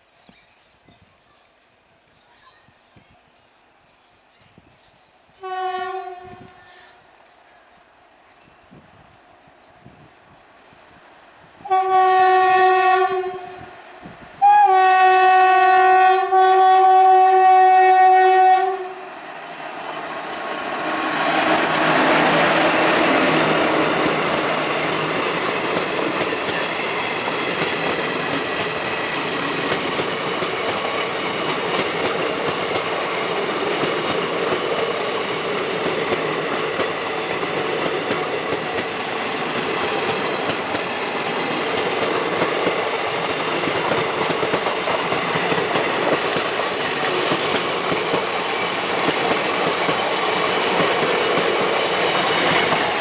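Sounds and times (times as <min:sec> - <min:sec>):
train wheels on rails: 0:05.4 - 0:53.0.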